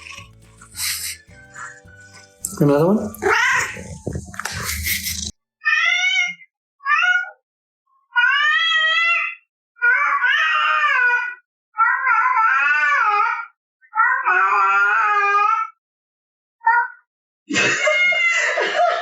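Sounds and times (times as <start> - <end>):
cat meowing: 0.0 - 0.4, 3.1 - 7.4, 8.1 - 15.7.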